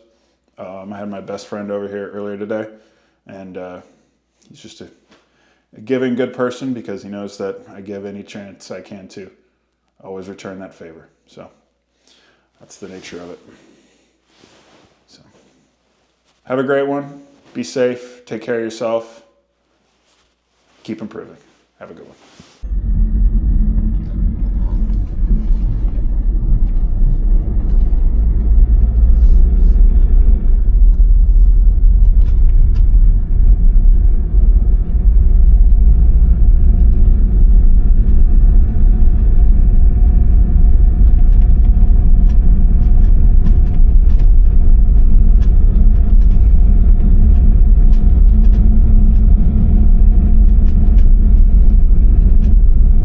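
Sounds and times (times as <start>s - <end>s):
faint steady hum: 22.6s - 53.0s
vehicle engine rumbling: 22.6s - 53.0s.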